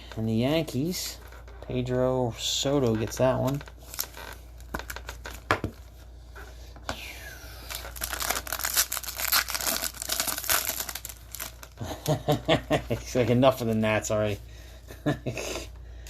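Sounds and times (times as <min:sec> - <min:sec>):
plastic packaging crinkling: 0:00.3 - 0:06.0, 0:07.6 - 0:14.3.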